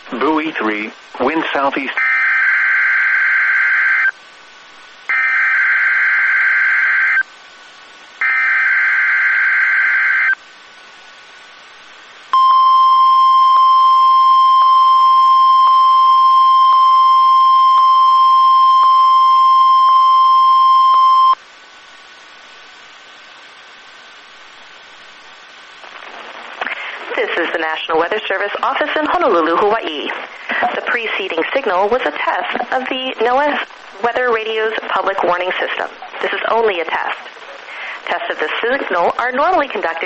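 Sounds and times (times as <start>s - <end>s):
steady warning alarm tone: 2.0s - 4.1s, 8.2s - 10.4s, 12.4s - 21.4s.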